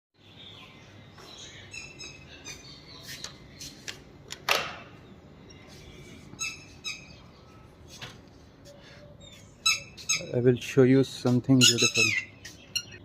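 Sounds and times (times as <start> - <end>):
chicks cheeping: 9.0 - 13.0.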